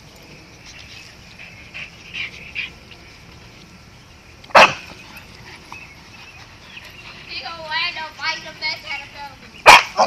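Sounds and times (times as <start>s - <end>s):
dog barking: 4.5s - 4.8s, 9.6s - 10.0s.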